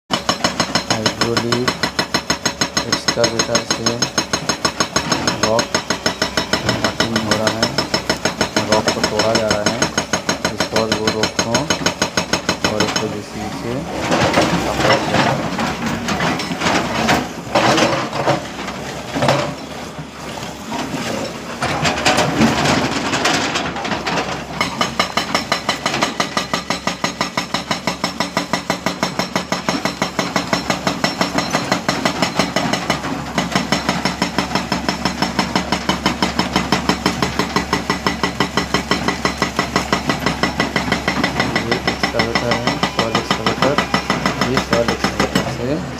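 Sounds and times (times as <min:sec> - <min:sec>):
hydraulic rock breaker hammering: 0:00.1 - 0:20.1, 0:20.8 - 0:45.9
excavator engine running: 0:00.1 - 0:45.9.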